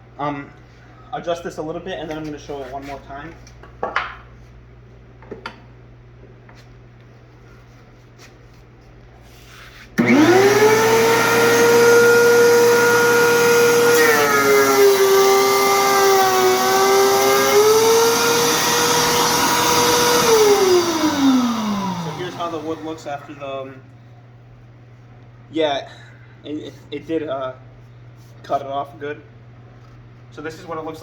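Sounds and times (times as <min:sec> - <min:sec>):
planer cutting a board: 0:10.0 - 0:23.0
thickness planer high whine: 0:10.0 - 0:23.2.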